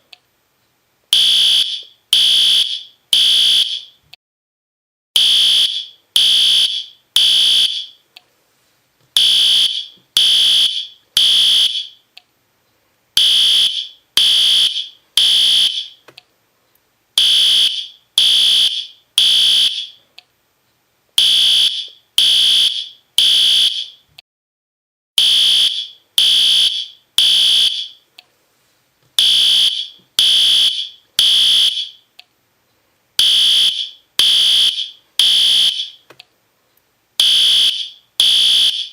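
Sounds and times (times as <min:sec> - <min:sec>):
fire alarm horn beeping: 0:01.1 - 0:04.0, 0:05.2 - 0:08.0, 0:09.2 - 0:12.0, 0:13.2 - 0:16.0, 0:17.2 - 0:20.0, 0:21.2 - 0:24.0, 0:25.2 - 0:28.0, 0:29.2 - 0:32.0, 0:33.2 - 0:36.0, 0:37.2 - 0:38.9.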